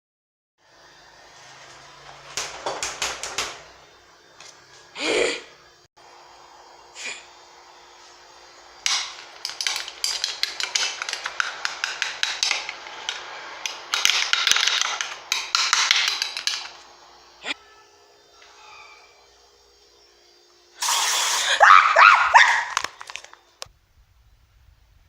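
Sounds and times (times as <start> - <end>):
hard objects knocking and clattering: 8.9 - 16.8.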